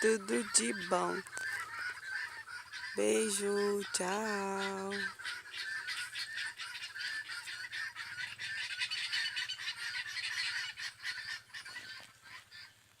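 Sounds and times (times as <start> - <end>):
guinea fowl calling: 0.0 - 13.0.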